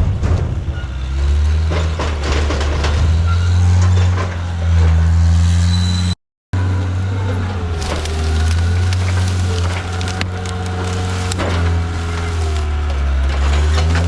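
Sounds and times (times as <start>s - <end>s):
diesel engine running under load: 6.6s - 14.0s
logs knocking and cracking: 7.7s - 14.0s.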